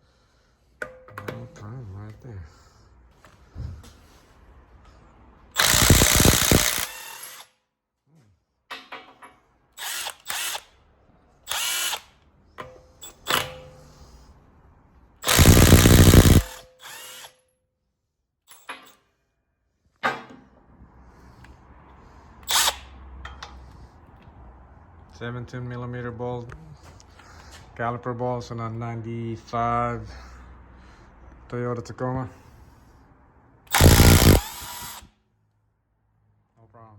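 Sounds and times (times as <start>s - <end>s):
impact wrench hammering lug nuts: 5.6s - 7.0s, 15.2s - 16.9s, 33.7s - 35.0s.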